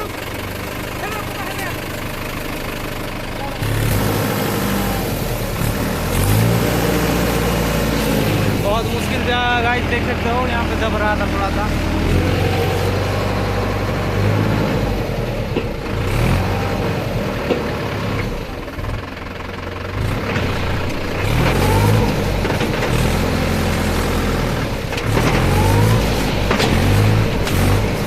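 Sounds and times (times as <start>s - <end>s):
tractor diesel engine revving: 0.0s - 28.0s.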